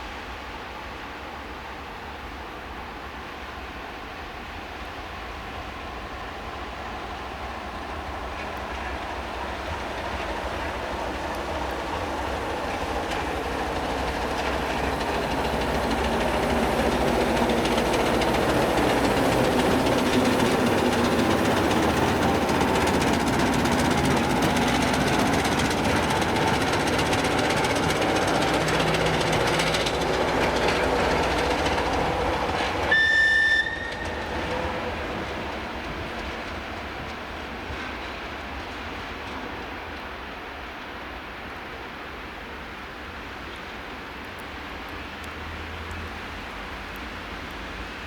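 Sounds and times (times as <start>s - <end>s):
diesel locomotive running: 0.0s - 48.0s
wheel clatter over rail joints: 8.0s - 39.6s
high-pitched whistle blast: 32.9s - 34.0s.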